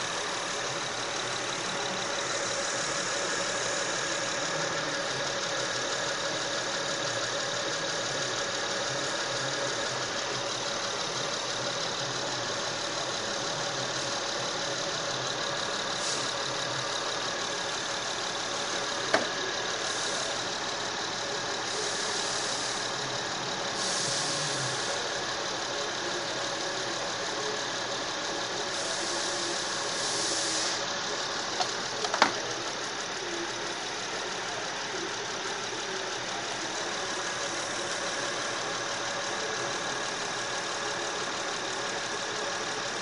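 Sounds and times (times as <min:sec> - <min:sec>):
car engine idling: 0:00.0 - 0:43.0
sharp click: 0:31.6 - 0:32.4.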